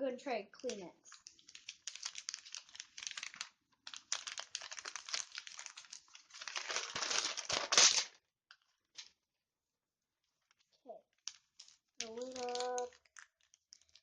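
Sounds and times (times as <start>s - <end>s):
tissue crinkling and rustling: 0.6s - 9.2s, 10.2s - 14.0s.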